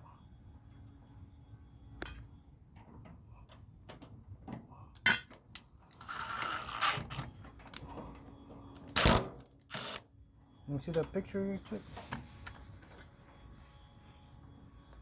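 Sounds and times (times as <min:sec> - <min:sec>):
hand tools and metal parts clicking: 0:04.9 - 0:10.0.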